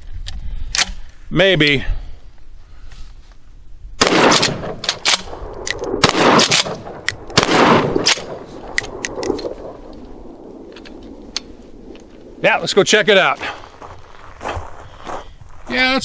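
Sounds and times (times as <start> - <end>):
shotgun blasts with echo: 4.0 - 13.6.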